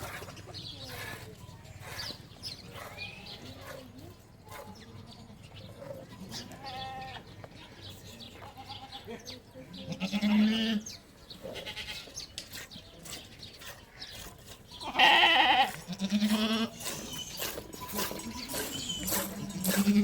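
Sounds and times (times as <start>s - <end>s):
goats bleating: 6.4s - 7.3s, 8.4s - 9.1s, 9.9s - 10.9s, 11.6s - 12.1s, 14.8s - 16.9s, 18.0s - 20.0s.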